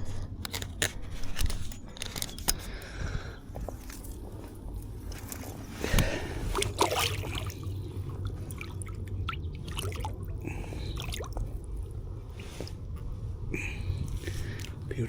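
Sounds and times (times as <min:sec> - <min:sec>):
water splashing and dripping: 0:05.2 - 0:12.0.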